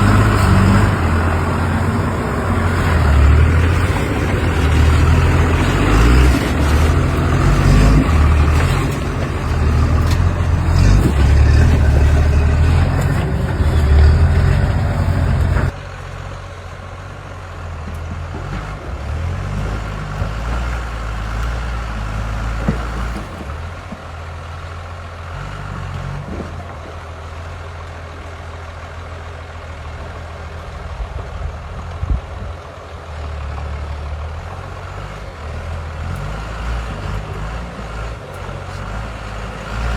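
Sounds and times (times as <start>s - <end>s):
loud engine revving: 0.0s - 15.8s, 36.0s - 39.9s
quieter engine revving: 0.0s - 15.8s.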